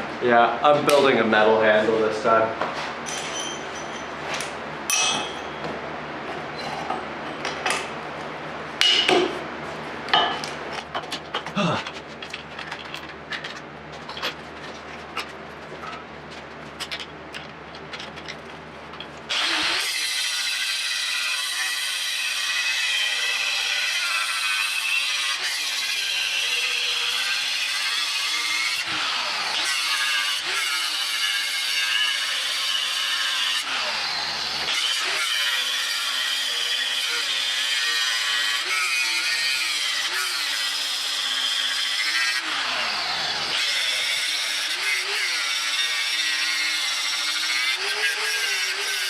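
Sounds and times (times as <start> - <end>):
electric grinder grinding steel: 19.3 - 49.0.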